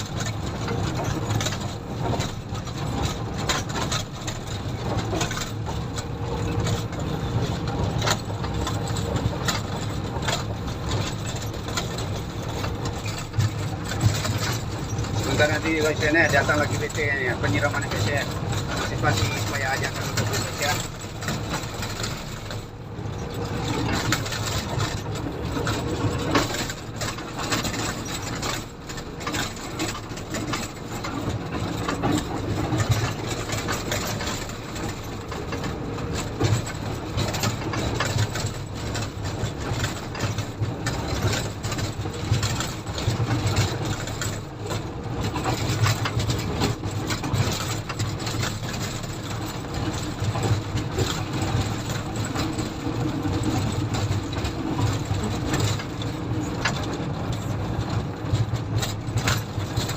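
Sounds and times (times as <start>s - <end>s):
diesel engine running: 0.0s - 59.9s
short rattles and knocks: 0.0s - 59.9s.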